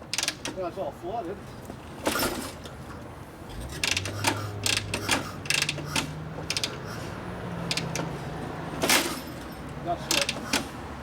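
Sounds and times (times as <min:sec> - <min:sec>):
kick-start ratcheting clicks: 0:03.8 - 0:06.9, 0:07.7 - 0:08.1, 0:10.1 - 0:10.6.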